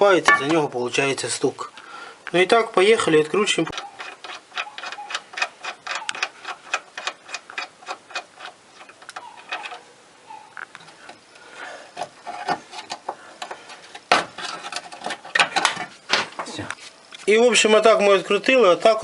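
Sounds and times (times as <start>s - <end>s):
hand ratchet clicking rapidly: 3.8s - 9.7s.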